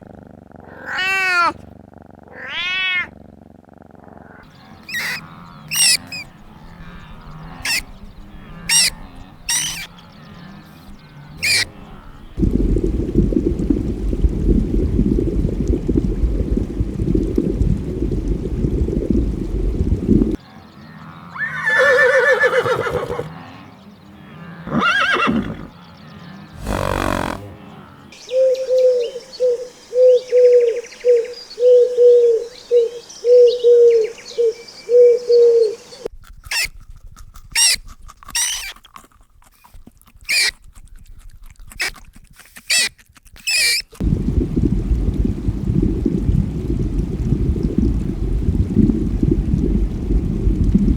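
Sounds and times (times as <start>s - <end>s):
farm animals calling: 4.3s - 12.2s, 24.3s - 28.1s, 43.5s - 44.0s
sharp high chirps: 4.9s - 6.3s, 8.7s - 8.9s, 9.5s - 9.9s.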